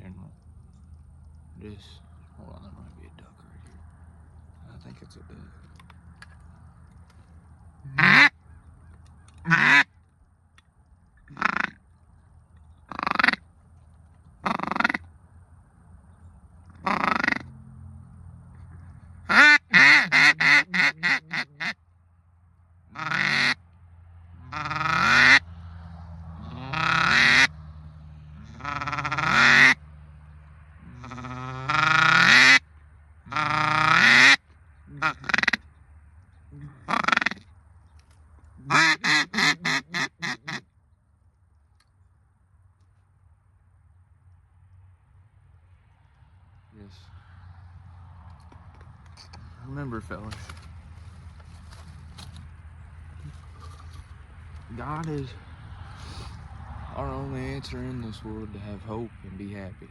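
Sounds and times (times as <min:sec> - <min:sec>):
duck call quacks: 0:07.9 - 0:08.4, 0:09.4 - 0:09.9, 0:11.3 - 0:11.8, 0:12.9 - 0:13.4, 0:14.4 - 0:15.1, 0:16.8 - 0:17.5, 0:19.3 - 0:21.8, 0:22.9 - 0:23.6, 0:24.4 - 0:25.4, 0:26.4 - 0:27.5, 0:28.4 - 0:29.8, 0:30.8 - 0:32.6, 0:33.3 - 0:35.6, 0:36.6 - 0:37.5, 0:38.6 - 0:40.6.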